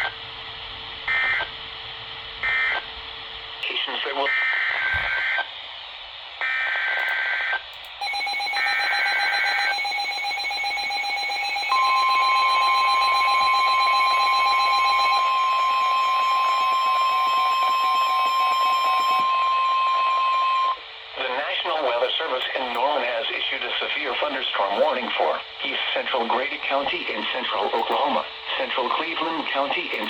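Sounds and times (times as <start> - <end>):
raspy data bursts: 7.9 - 18.9
steady high alarm tone: 7.9 - 20.9
pulsing alert tone: 8.0 - 19.5.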